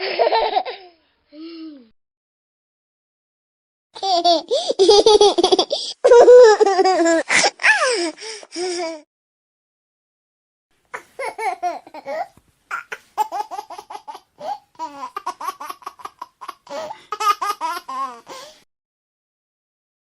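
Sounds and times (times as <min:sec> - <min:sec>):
baby giggling: 0:04.0 - 0:08.1, 0:10.9 - 0:18.5.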